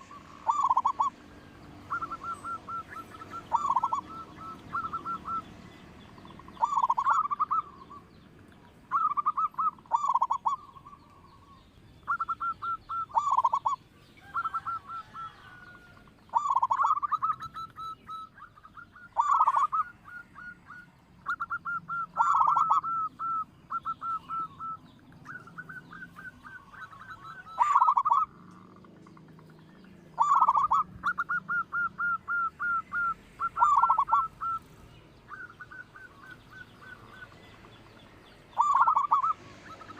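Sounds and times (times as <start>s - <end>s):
dove cooing: 0.0s - 8.0s, 8.9s - 37.6s, 38.6s - 39.9s.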